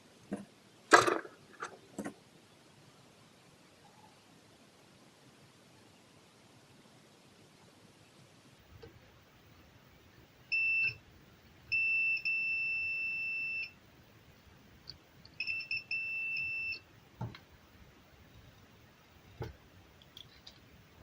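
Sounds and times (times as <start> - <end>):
multimeter continuity beeping: 10.4 - 13.9, 14.8 - 17.5.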